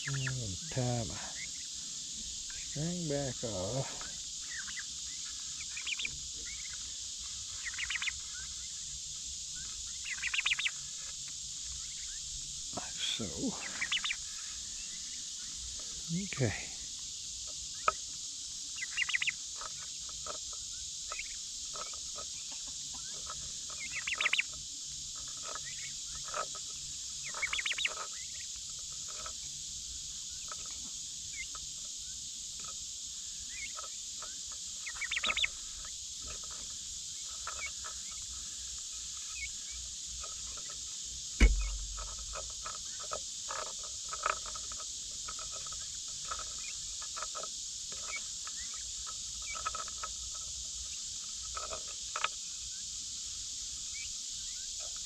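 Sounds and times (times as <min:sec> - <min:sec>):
chattering bird calls: 0:00.0 - 0:16.7, 0:17.6 - 0:24.6, 0:25.2 - 0:29.2, 0:33.4 - 0:40.8, 0:41.4 - 0:43.1
insects chorus: 0:00.0 - 0:55.0
loud thump: 0:41.4 - 0:42.5.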